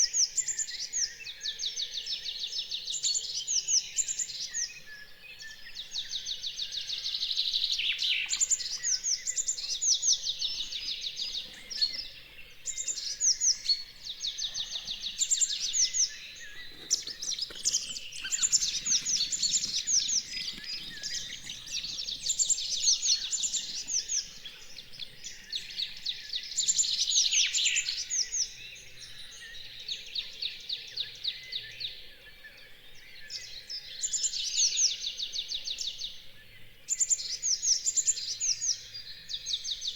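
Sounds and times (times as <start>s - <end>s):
faint bird calls: 9.6s - 26.0s.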